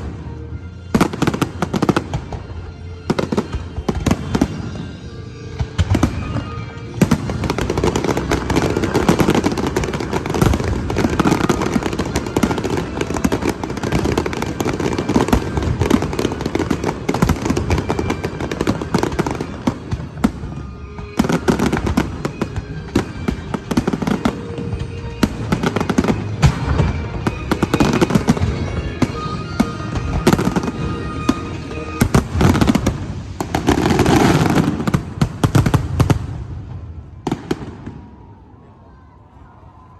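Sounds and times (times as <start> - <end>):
music playing: 0.0 - 38.4
fireworks bursting and crackling: 0.0 - 38.6.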